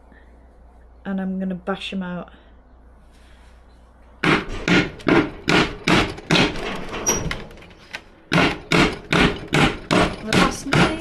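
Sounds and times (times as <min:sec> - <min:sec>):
hammer striking nails: 0:04.2 - 0:07.2, 0:08.3 - 0:11.0.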